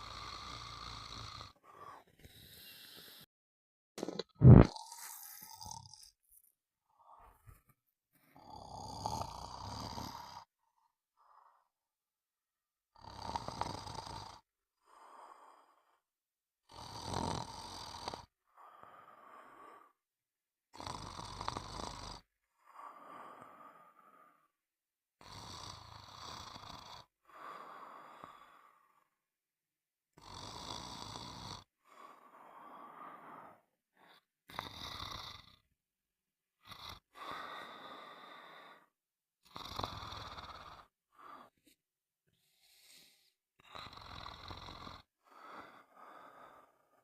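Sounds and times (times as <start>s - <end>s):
loud snoring: 0.0s - 3.2s, 4.0s - 6.2s, 8.4s - 10.5s, 13.0s - 15.0s, 16.6s - 18.3s, 20.8s - 22.3s, 25.2s - 28.7s, 30.2s - 35.7s, 36.6s - 41.5s, 43.6s - 47.0s
soft breath: 1.5s - 3.3s, 41.1s - 43.4s, 45.2s - 47.0s.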